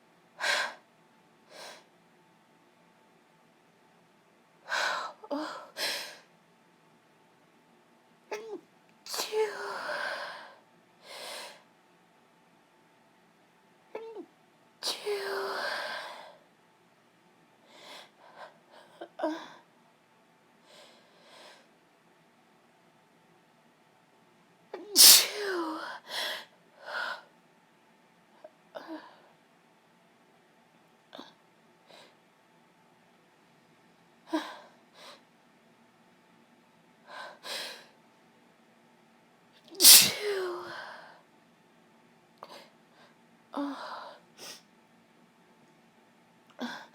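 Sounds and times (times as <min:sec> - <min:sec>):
woman breathing noisily: 0:09.4 - 0:11.7
woman sneezing: 0:24.8 - 0:25.8, 0:39.8 - 0:40.8.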